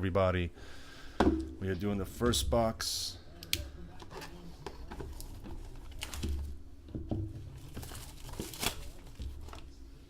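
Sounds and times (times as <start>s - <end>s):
packaging crinkling and tearing: 5.1s - 6.6s, 7.5s - 9.7s.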